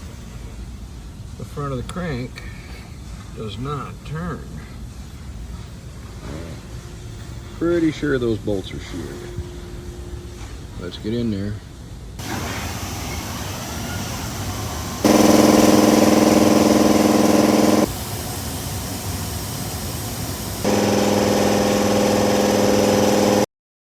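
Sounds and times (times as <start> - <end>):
steady hum: 12.2 - 23.5
impact wrench whirring: 14.3 - 23.5.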